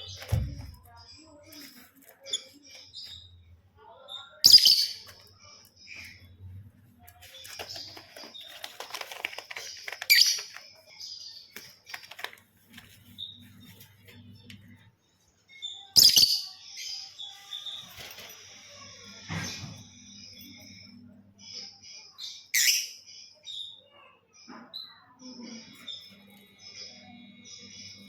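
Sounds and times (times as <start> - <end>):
birds moving in cage: 0.0 - 21.6
lovebirds chirping: 0.0 - 28.0.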